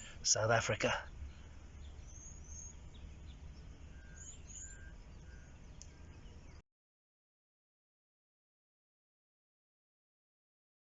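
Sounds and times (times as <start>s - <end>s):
low background rumble: 0.0s - 6.6s
short high bird chirps: 1.0s - 6.6s.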